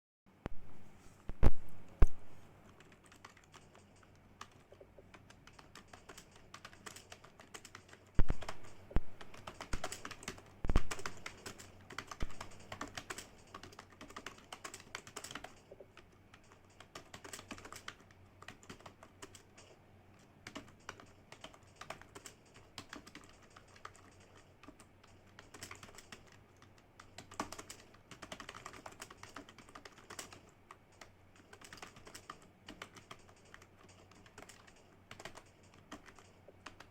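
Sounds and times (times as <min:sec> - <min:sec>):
computer keyboard typing: 0:01.3 - 0:36.9.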